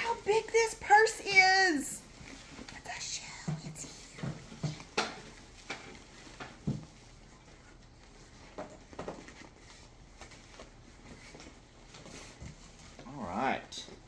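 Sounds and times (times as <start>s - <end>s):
faint clicks and knocks of handling: 2.0s - 13.1s.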